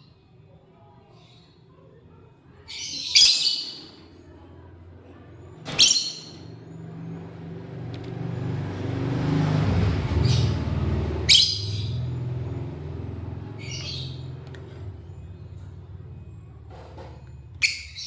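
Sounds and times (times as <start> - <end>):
bird chirping shrilly: 11.2 - 12.2, 13.6 - 14.4.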